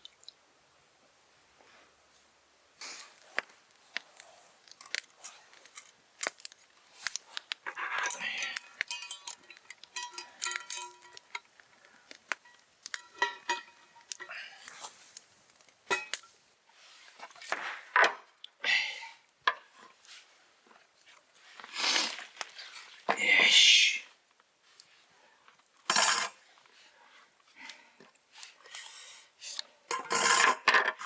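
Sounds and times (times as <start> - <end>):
metal cookware clinking: 7.7 - 11.6, 12.4 - 14.3, 15.9 - 16.3, 25.8 - 26.4, 29.9 - 31.0.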